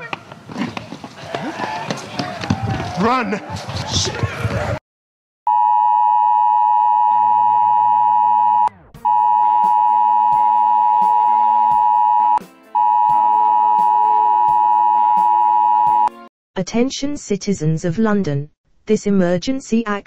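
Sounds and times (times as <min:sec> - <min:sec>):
steady attention tone: 0:05.5 - 0:16.1.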